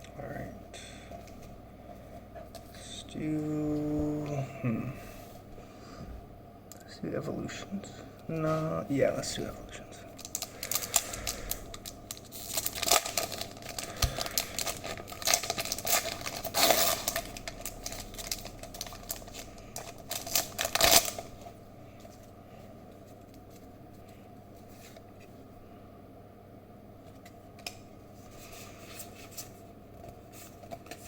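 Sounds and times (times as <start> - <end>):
foil wrapper crinkling and tearing: 10.2 - 21.6.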